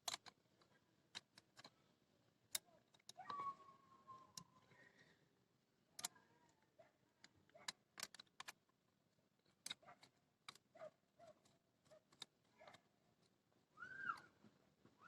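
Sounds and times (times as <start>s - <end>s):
tools and small parts clicking: 0.0s - 1.8s, 2.5s - 3.5s, 4.2s - 4.8s, 6.0s - 13.4s.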